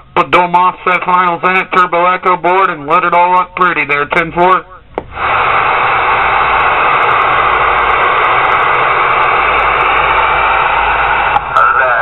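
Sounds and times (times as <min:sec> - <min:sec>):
radio static hiss: 0:04.1 - 0:12.0.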